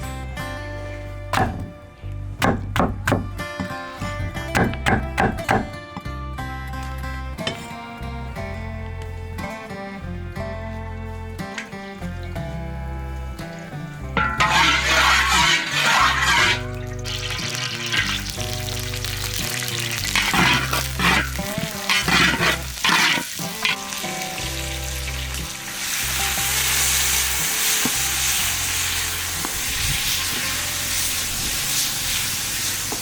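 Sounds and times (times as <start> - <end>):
background music: 0.0 - 33.0
utensil scraping a pan: 14.2 - 18.5, 19.9 - 23.9
meat sizzling in a pan: 14.4 - 33.0.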